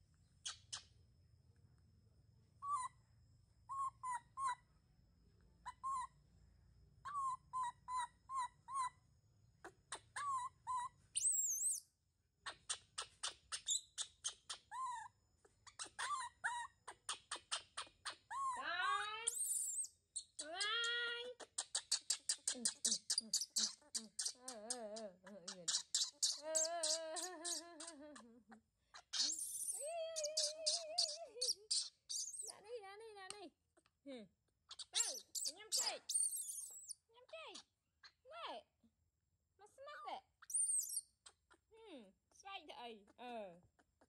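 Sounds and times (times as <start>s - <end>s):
baby monkey squeaking: 2.6s - 3.0s, 3.7s - 4.6s, 5.7s - 6.1s, 7.1s - 9.0s, 9.9s - 11.8s, 12.5s - 32.6s, 34.7s - 38.2s, 40.4s - 41.7s.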